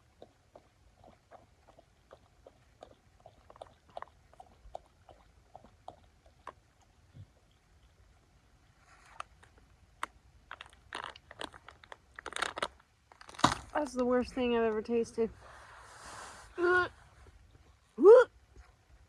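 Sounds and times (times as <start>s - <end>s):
person chewing food: 0.0s - 13.6s.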